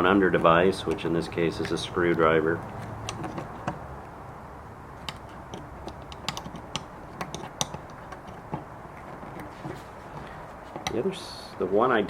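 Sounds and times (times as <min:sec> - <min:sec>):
screwdriver clicks and taps: 0:00.2 - 0:04.2, 0:05.0 - 0:09.5, 0:10.2 - 0:11.0.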